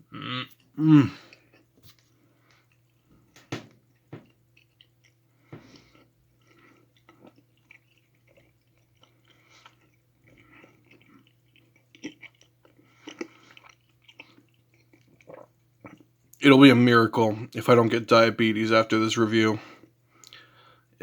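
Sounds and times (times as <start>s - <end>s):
person chewing gummy candy: 0.1s - 16.4s.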